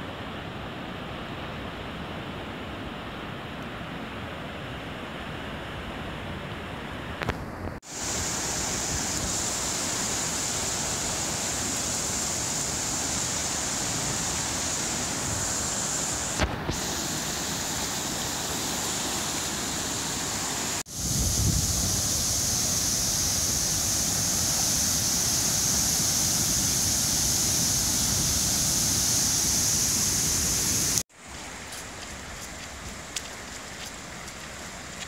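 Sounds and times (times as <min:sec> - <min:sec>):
floodwater rushing: 0:07.8 - 0:35.0.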